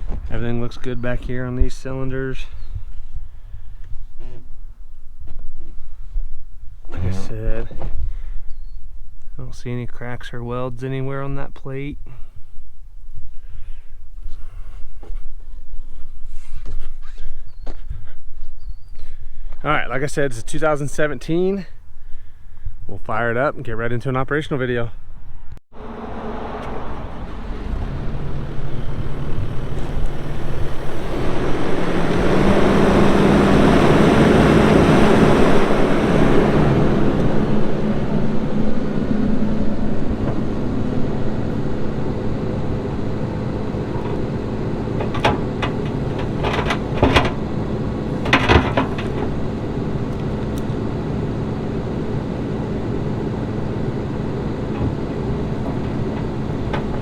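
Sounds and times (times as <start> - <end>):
diesel engine revving: 25.7 - 57.0.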